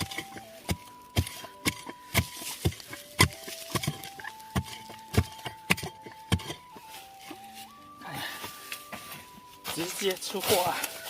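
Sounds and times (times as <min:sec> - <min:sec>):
hoe chopping into soil: 0:00.0 - 0:07.4.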